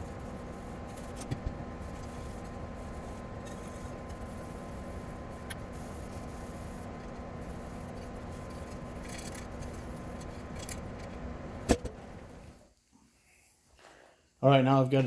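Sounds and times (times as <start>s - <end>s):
low rumble and hum: 0.0s - 12.6s.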